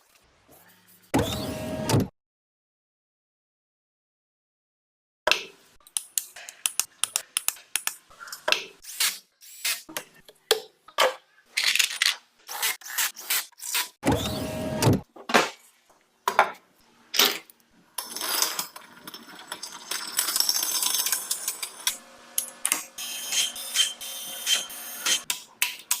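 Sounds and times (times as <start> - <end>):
continuous workshop tool noise: 1.0 - 2.1, 12.5 - 15.1, 18.0 - 26.0.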